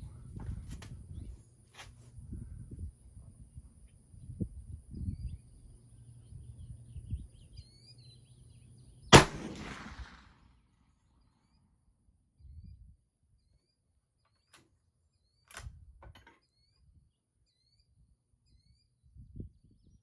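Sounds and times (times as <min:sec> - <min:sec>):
rifle shot with echo: 0:09.1 - 0:10.4.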